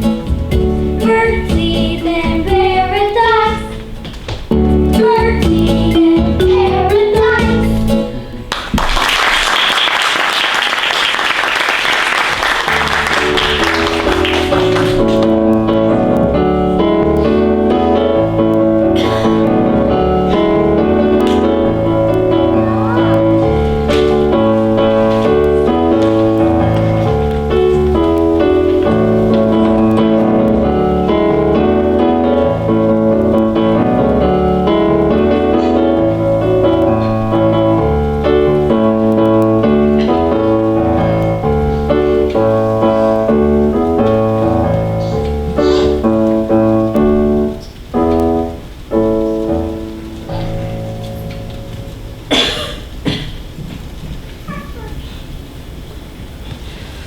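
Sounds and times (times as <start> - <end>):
music: 0.0 - 53.2
piano accompaniment: 0.0 - 54.4
audience applause: 8.5 - 15.2.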